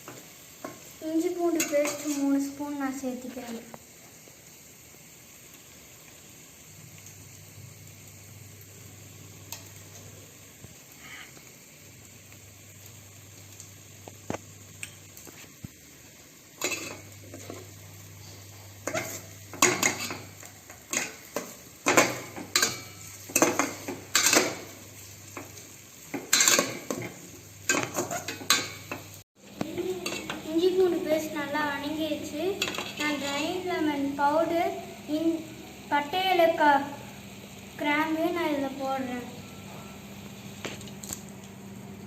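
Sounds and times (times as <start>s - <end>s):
faint frying sizzle: 0.0s - 42.0s
spoon scraping a pan: 1.5s - 2.5s, 16.6s - 17.8s, 18.8s - 29.1s, 30.0s - 30.5s, 32.5s - 33.7s.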